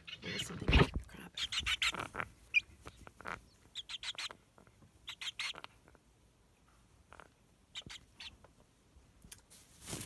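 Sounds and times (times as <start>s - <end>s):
chick peeping: 0.0s - 6.0s, 7.0s - 8.4s.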